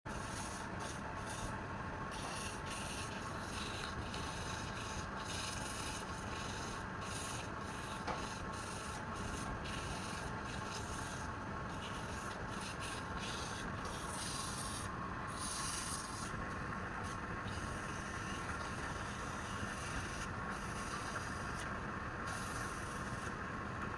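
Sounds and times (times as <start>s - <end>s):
wood being sanded: 0.1s - 1.5s, 2.1s - 16.3s
steady background noise: 0.1s - 23.9s.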